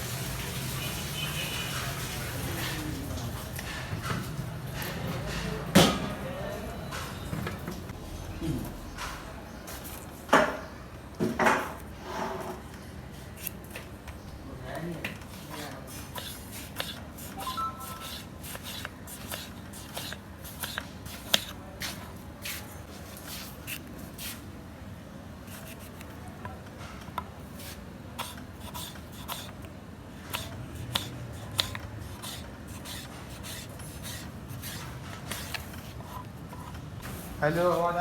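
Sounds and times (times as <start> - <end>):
kitchen utensils scraping and clicking: 2.2 - 6.2, 15.1 - 24.3, 25.5 - 38.0.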